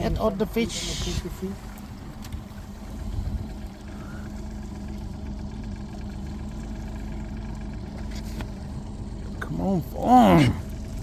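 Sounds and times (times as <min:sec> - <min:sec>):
outboard motor running: 0:00.0 - 0:11.0.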